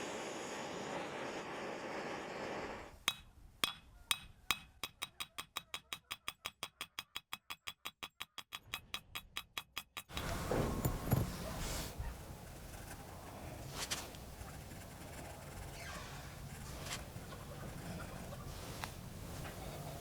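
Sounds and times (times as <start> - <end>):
handling noise: 10.1 - 20.0.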